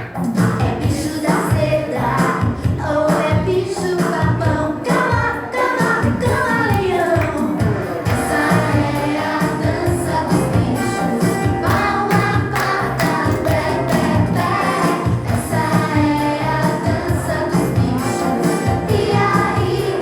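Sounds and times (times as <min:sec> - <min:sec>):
band playing steady beat: 0:04.8 - 0:20.0
choir singing: 0:04.8 - 0:20.0.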